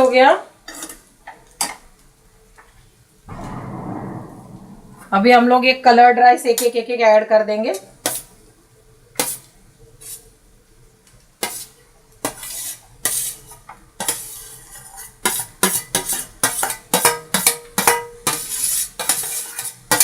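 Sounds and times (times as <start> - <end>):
spoon scraping a cooking pan: 11.4 - 20.0.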